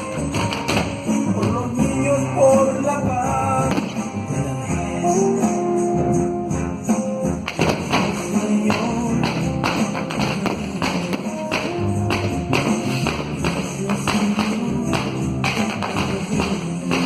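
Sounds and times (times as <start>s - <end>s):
sharp percussive hits: 7.4s - 17.0s.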